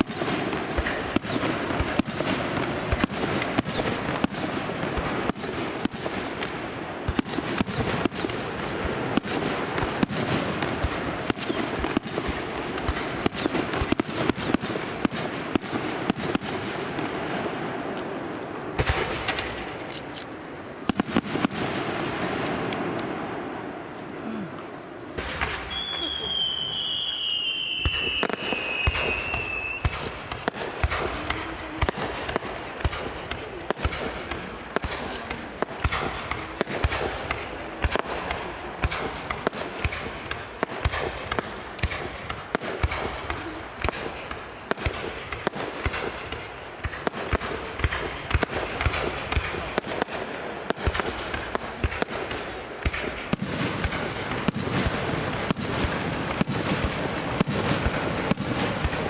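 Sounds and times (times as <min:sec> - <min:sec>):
fireworks bangs and crackles: 0:00.0 - 0:59.0
falling firework whistle: 0:25.2 - 0:30.2.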